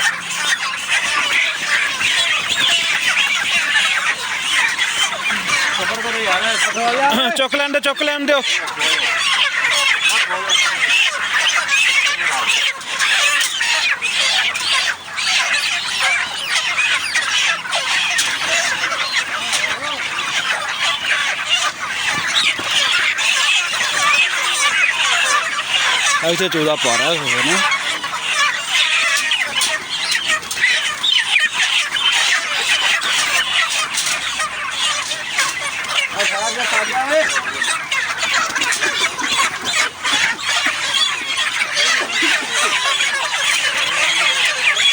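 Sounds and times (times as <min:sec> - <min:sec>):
chicks peeping and clucking: 0:00.0 - 0:44.9.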